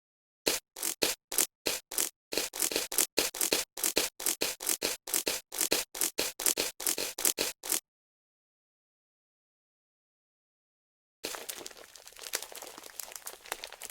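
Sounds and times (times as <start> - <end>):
slime squelching and crackling: 11.2 - 13.9.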